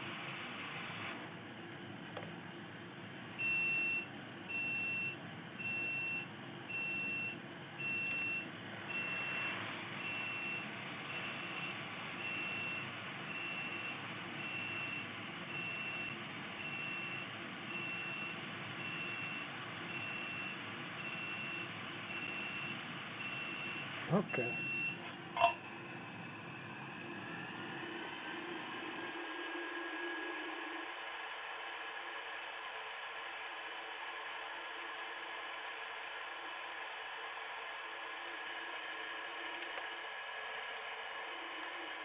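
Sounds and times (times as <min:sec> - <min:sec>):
bench equipment hum: 0:07.4 - 0:42.0
electronic beeper beeping: 0:21.1 - 0:25.6.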